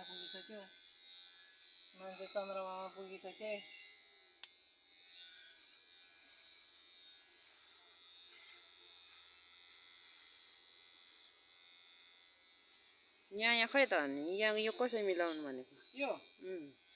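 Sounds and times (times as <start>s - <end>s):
electric hair clipper buzzing: 0.0s - 16.9s.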